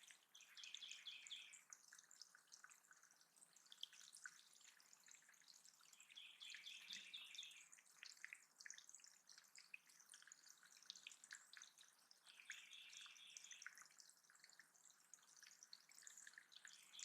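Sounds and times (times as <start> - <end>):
water dripping and trickling: 0.0 - 17.0
buzzy trilled birdsong: 6.0 - 7.7.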